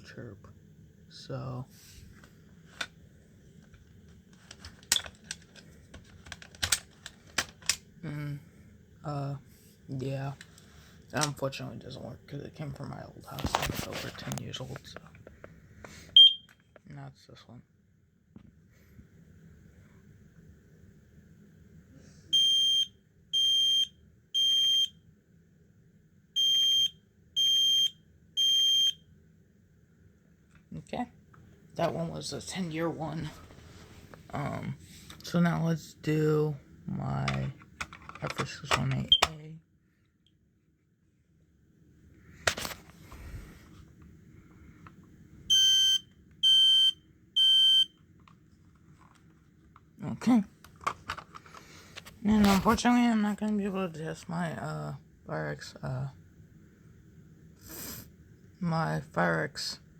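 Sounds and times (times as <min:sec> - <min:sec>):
smoke alarm beeps: 0:16.2 - 0:16.6, 0:22.3 - 0:25.0, 0:26.4 - 0:29.0, 0:45.5 - 0:48.0.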